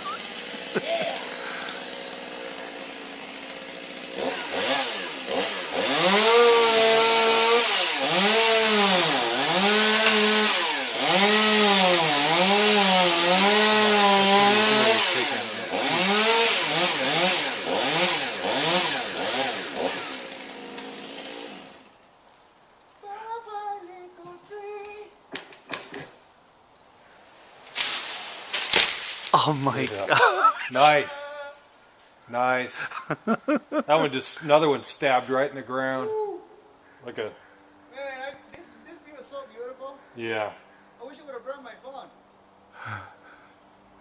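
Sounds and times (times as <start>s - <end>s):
chainsaw cutting wood: 0.0s - 22.0s, 27.7s - 29.3s.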